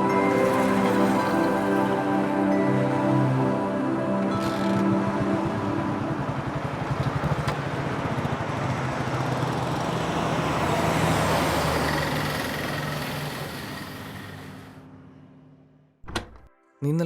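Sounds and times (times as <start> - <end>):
vehicle engine and road noise: 4.4 - 16.0.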